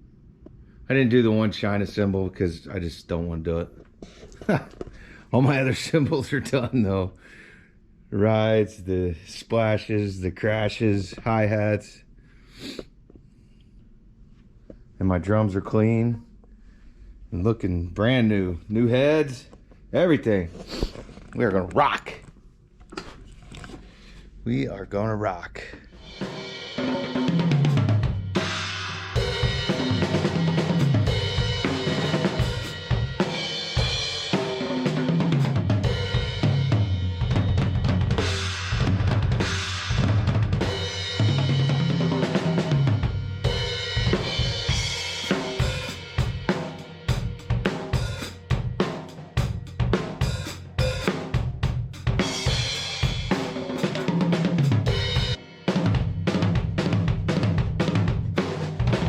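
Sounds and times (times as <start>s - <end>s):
drum kit playing fast: 26.0s - 59.0s.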